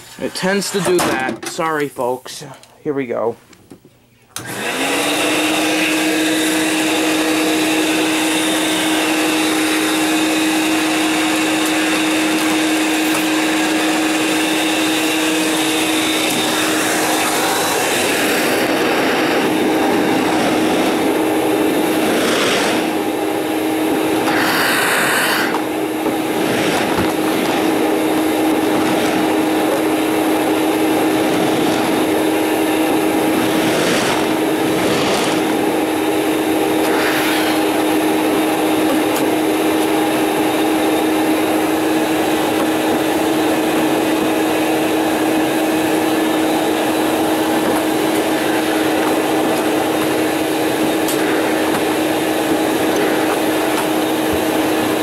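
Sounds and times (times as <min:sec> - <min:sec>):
vacuum cleaner running: 0:04.4 - 0:55.0.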